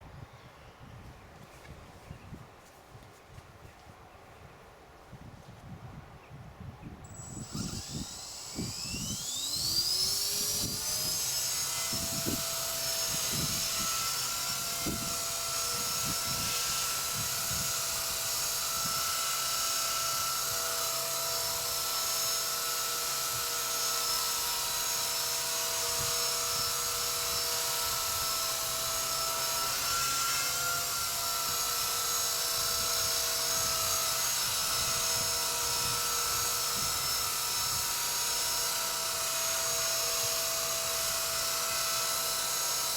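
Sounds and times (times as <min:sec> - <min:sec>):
wind buffeting microphone: 0:00.0 - 0:19.4, 0:25.7 - 0:41.1
helicopter motor and rotors whining: 0:07.1 - 0:42.9.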